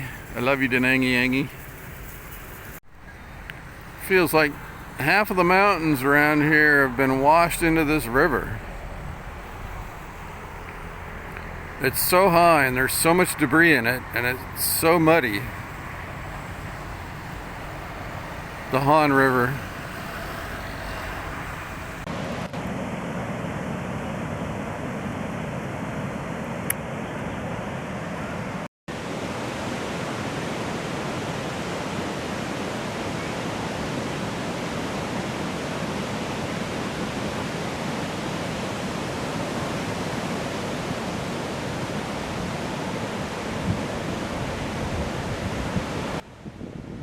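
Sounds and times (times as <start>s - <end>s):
moving water: 0.0s - 22.1s
wind on microphone: 42.6s - 47.0s.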